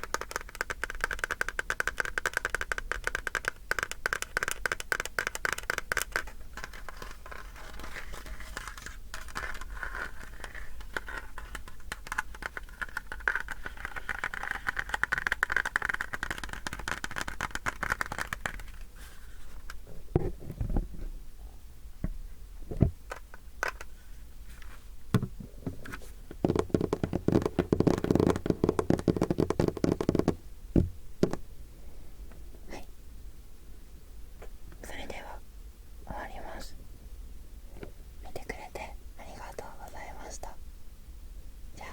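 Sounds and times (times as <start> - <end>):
object crinkling and scratching: 0.0 - 21.1, 23.1 - 30.4.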